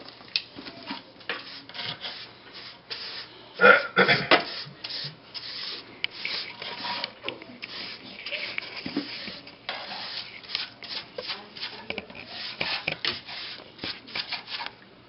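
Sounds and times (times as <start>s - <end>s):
scraping on floor: 4.0s - 14.7s.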